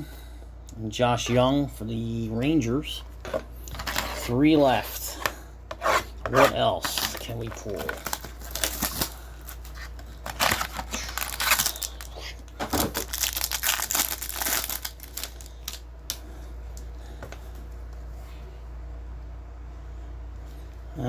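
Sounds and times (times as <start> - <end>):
wrapper tearing and crinkling: 6.5 - 15.8.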